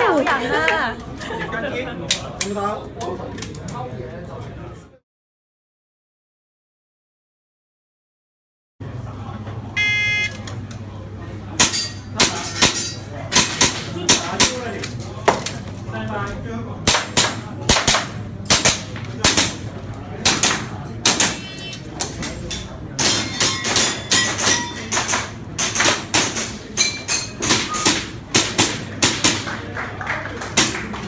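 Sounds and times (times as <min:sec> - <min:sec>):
airsoft guns firing: 0:16.9 - 0:21.5, 0:27.4 - 0:29.5.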